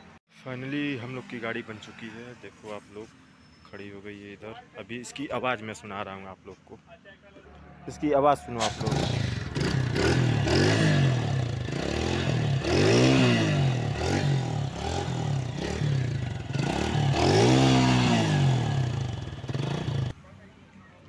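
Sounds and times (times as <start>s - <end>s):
motorcycle engine idling and revving: 8.5s - 20.6s.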